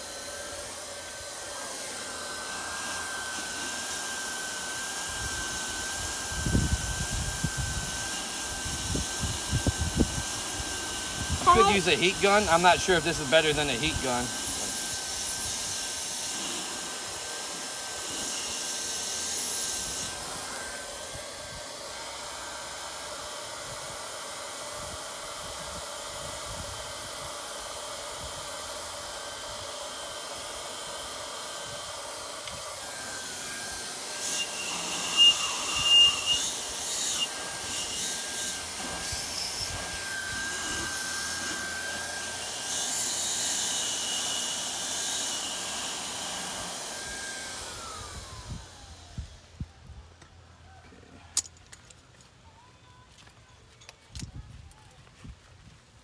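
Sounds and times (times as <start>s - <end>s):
hot air welder blowing: 0.0s - 49.7s
short sharp high squeaks: 34.3s - 38.1s.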